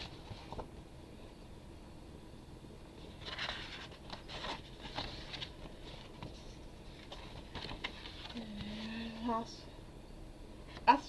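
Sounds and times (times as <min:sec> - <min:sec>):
paper rustling: 0:00.0 - 0:00.7, 0:03.0 - 0:09.3.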